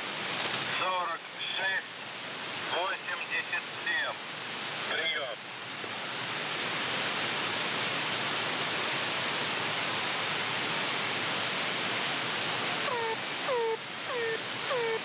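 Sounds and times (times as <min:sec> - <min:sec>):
radio static hiss: 0:00.4 - 0:05.5, 0:12.3 - 0:15.0.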